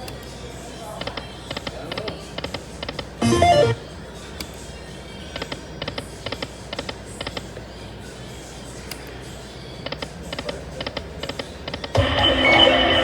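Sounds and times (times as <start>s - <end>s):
slot machine pitched tone: 3.2s - 3.8s, 12.0s - 13.0s.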